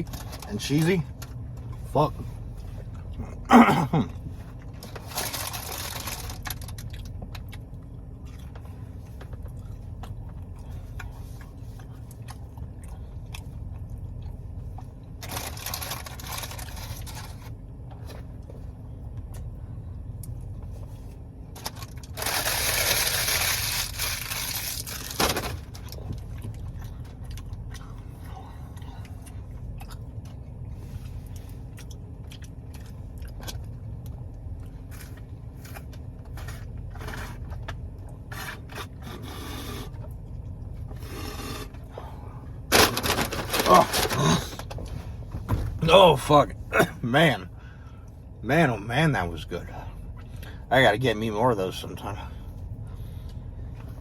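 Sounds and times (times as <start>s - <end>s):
steady low hum: 0.0s - 54.0s
chewing and crunching: 4.1s - 45.0s.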